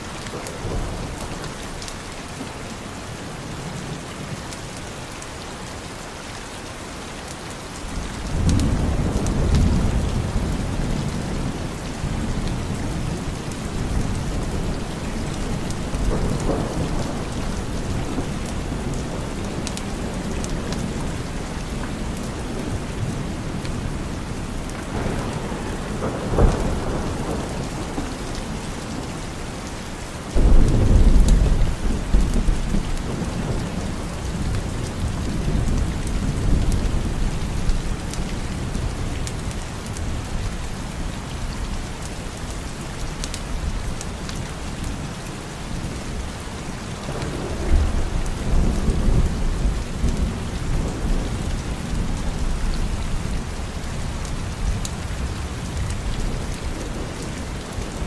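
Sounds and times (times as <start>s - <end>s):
steady rain falling: 0.0s - 58.0s
thunder rolling: 8.2s - 29.4s, 30.4s - 39.1s, 47.0s - 58.0s.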